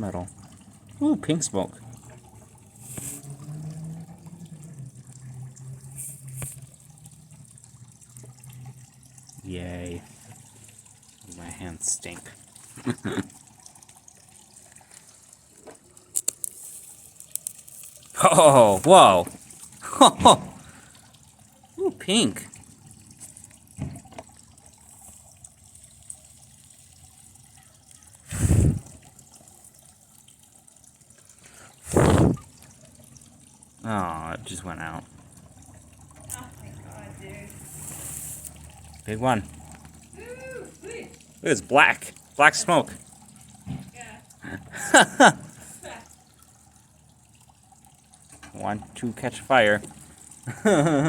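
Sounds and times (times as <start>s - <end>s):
circuit board fizzing and crackling: 11.5s - 19.9s
circuit board fizzing crackle: 16.0s - 18.4s.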